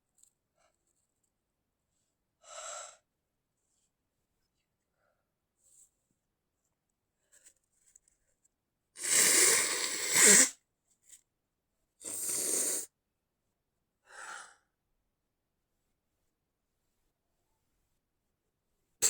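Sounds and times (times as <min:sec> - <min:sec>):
person stifled sneezing: 0:09.0 - 0:10.5.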